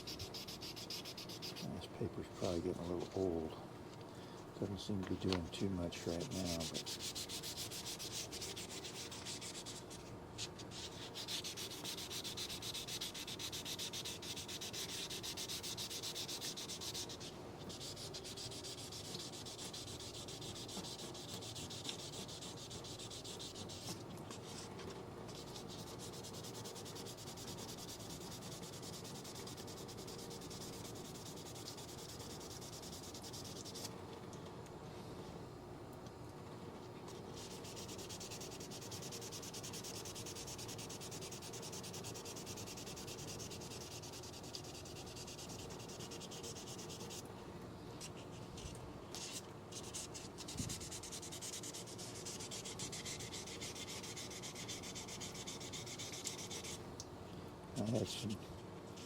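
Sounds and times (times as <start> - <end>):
hand sanding metal: 0.0 - 1.8, 5.9 - 10.0, 10.7 - 24.7, 25.3 - 33.9, 37.4 - 47.2, 49.2 - 56.8.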